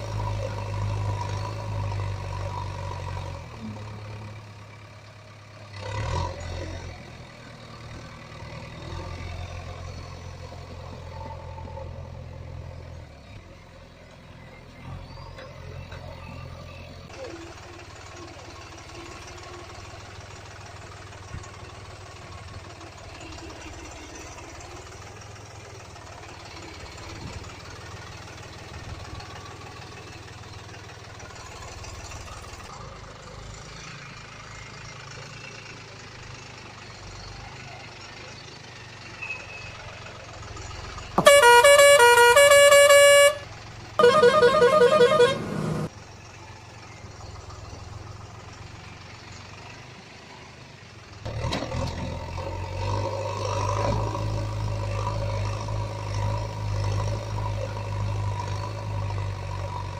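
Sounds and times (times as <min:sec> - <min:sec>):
vehicle horn blasts: 0:41.2 - 0:45.9.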